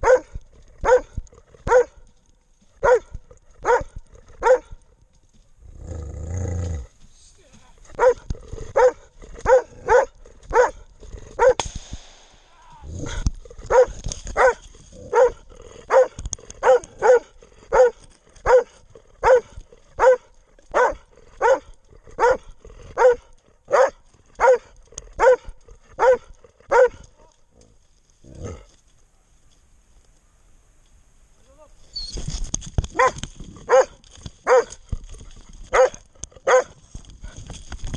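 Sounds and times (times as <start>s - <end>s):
dog barking: 0.0s - 2.0s, 2.8s - 4.8s, 7.9s - 8.2s, 8.8s - 10.8s, 11.4s - 11.6s, 13.0s - 27.3s, 33.0s - 34.8s, 35.7s - 36.8s.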